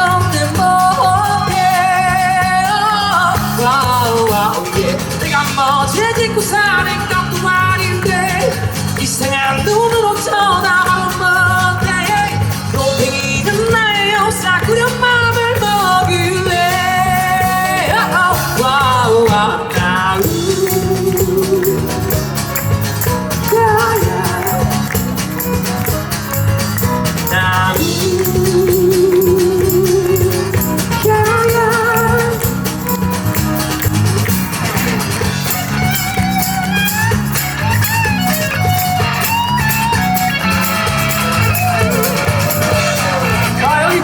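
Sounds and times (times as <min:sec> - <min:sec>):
bass line: 0:00.0 - 0:44.0
drum beat: 0:00.0 - 0:44.0
live pop band playing: 0:00.0 - 0:44.0
lead guitar solo: 0:20.2 - 0:44.0.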